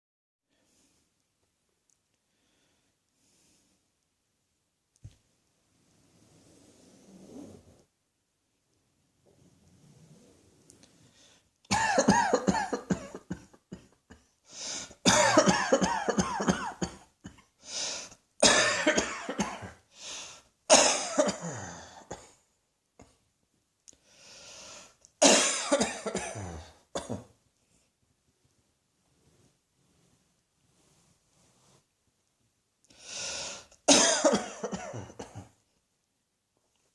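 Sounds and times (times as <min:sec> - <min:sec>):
person coughing: 0:11.7 - 0:14.4, 0:15.0 - 0:17.5, 0:18.4 - 0:19.8, 0:20.7 - 0:22.4, 0:25.2 - 0:27.4, 0:33.8 - 0:35.6.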